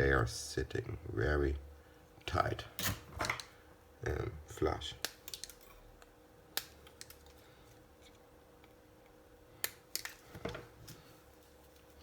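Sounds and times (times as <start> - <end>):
faint steady hum: 0.0 - 12.0.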